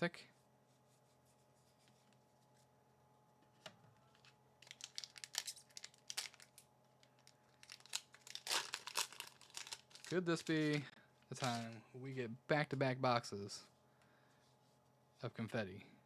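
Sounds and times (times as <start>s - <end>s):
foil wrapper crinkling and tearing: 4.6s - 11.7s.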